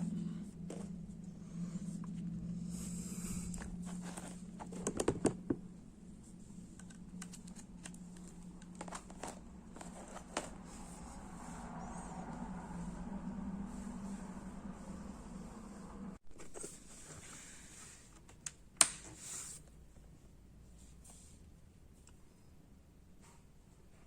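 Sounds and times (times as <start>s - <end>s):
low hum: 0.0s - 16.2s.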